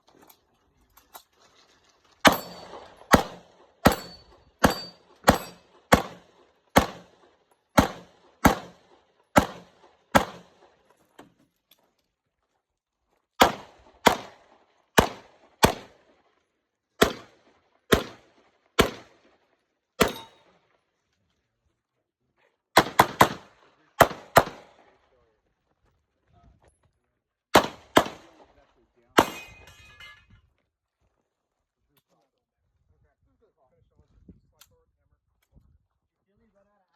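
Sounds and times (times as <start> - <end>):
pistol shots: 2.2 - 10.7, 13.4 - 16.0, 17.0 - 19.2, 20.0 - 20.5, 22.8 - 24.9, 27.5 - 28.5, 29.2 - 29.6.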